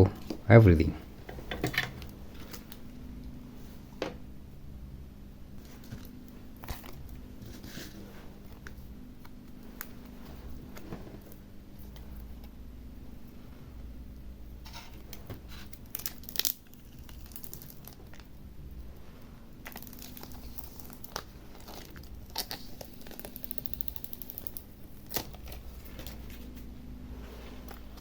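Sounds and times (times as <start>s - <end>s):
steady low hum: 0.0s - 28.0s
crinkling: 14.6s - 28.0s.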